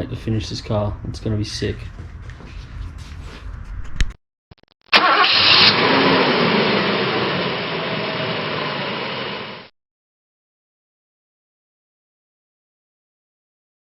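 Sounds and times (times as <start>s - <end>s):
car engine starting and running: 5.0s - 9.7s.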